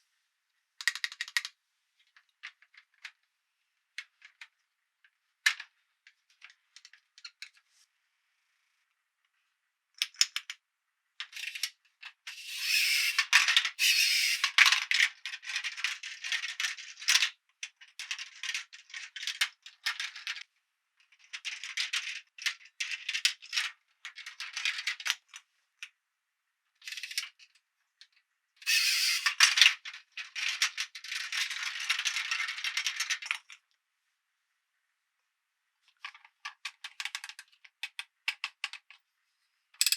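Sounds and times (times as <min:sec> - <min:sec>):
plastic toy pieces rattling: 0:12.3 - 0:17.3, 0:28.7 - 0:33.6.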